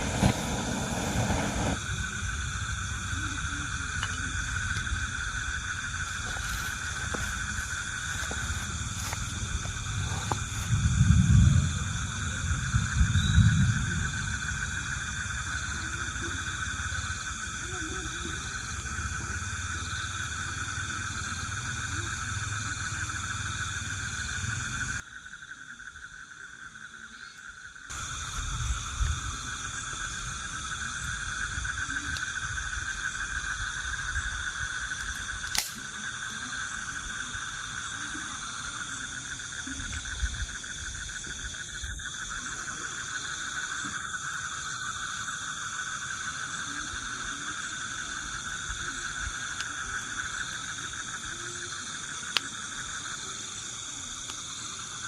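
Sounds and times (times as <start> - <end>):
insects droning: 0.0 - 55.0
low rumble: 3.8 - 15.6.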